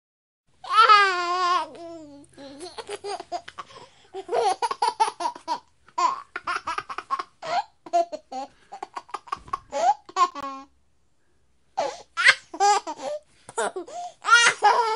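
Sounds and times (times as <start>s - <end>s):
baby laughing: 0.6s - 10.7s, 11.8s - 14.9s.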